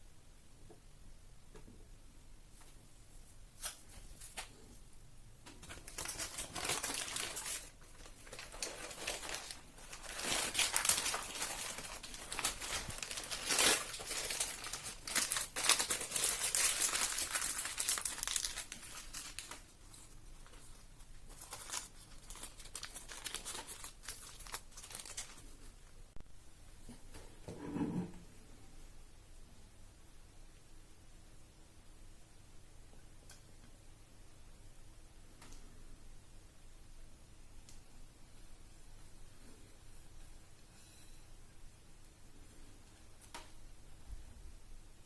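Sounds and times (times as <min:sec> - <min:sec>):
wrapper crinkling and rustling: 0:05.6 - 0:25.9.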